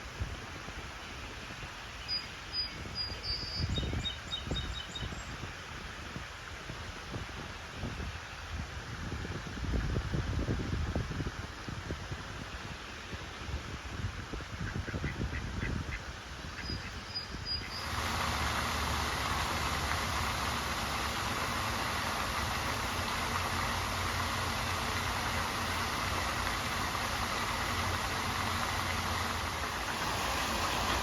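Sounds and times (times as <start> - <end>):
low mechanical hum: 0.0 - 31.0
steady rushing noise: 14.0 - 31.0
high bird chirp: 16.6 - 17.9.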